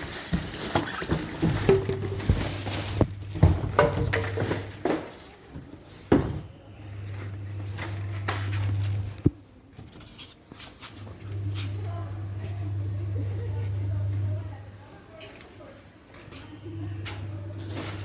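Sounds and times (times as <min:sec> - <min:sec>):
packaging and parts handling: 0:00.0 - 0:05.2.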